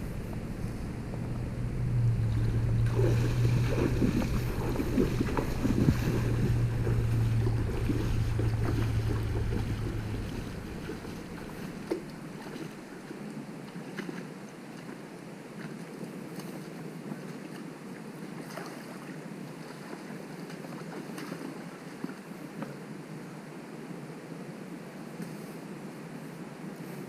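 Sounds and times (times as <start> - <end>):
low rumble on microphone: 0.0 - 13.0
moving water: 0.0 - 23.9
wind: 0.0 - 27.0.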